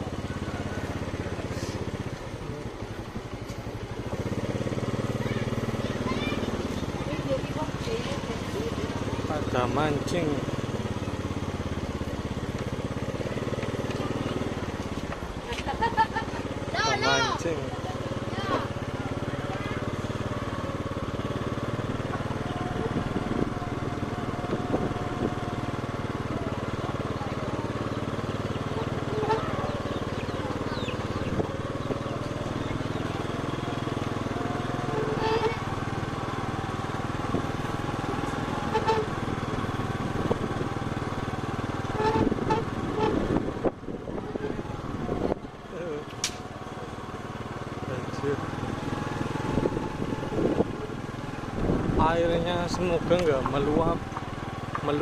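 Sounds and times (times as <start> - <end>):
faint voices: 0.0 - 3.6, 4.2 - 11.4, 16.5 - 38.7
small motorcycle engine running: 0.0 - 55.0
short pitched horn toots: 29.0 - 29.7, 38.6 - 39.3, 41.8 - 43.4.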